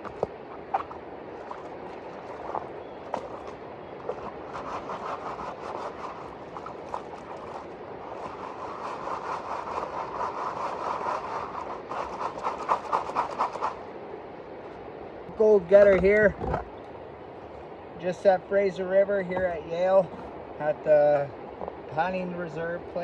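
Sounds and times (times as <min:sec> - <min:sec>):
river water rushing: 0:00.0 - 0:23.0.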